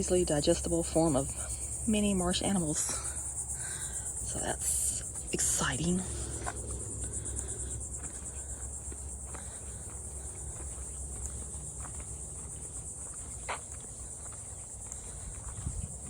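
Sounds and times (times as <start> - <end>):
crickets trilling: 0.0 - 16.0
low rumble: 5.0 - 12.7.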